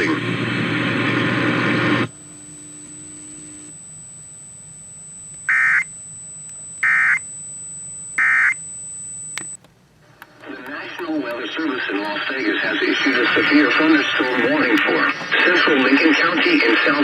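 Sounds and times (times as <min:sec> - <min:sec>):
buzzy data tone bursts: 0:01.8 - 0:09.5, 0:10.1 - 0:17.0.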